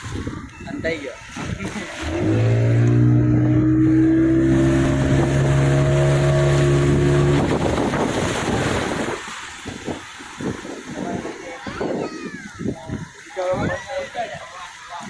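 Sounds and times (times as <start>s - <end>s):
wind noise on microphone: 0.0s - 14.5s
motorboat engine drone: 1.4s - 9.0s.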